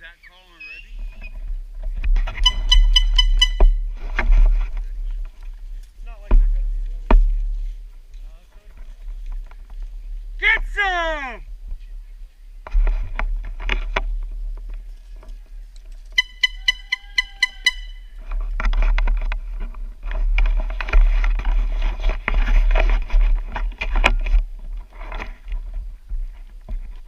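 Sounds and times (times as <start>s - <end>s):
short high electronic beeps: 2.4s - 3.8s, 16.2s - 18.0s
crunching and rustling: 11.6s - 16.2s, 17.0s - 27.0s.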